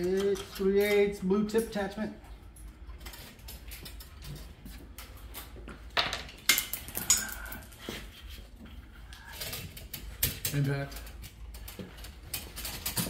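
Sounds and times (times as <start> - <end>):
metallic clinks and knocks of tools: 6.0 - 7.9.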